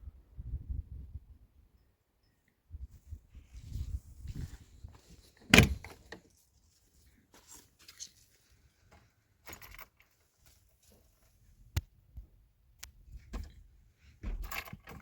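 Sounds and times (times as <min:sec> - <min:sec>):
knocks and rustles: 0:13.1 - 0:15.0.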